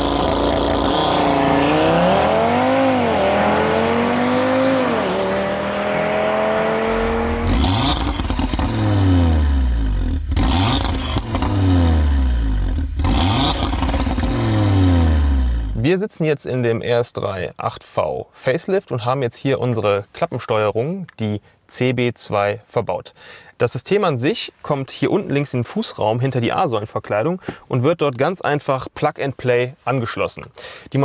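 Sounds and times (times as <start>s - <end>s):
car engine revving: 0.0s - 15.8s.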